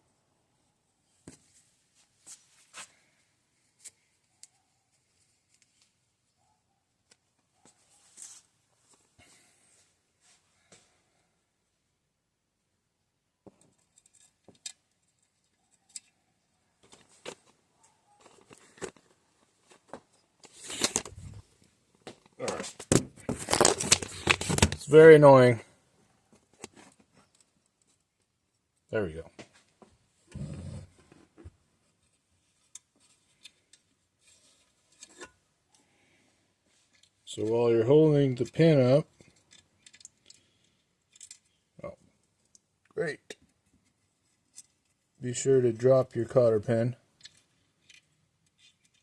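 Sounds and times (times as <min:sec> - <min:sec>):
small metal parts clicking: 0:39.2 - 0:41.6
clicks handling metal parts: 0:41.1 - 0:41.5.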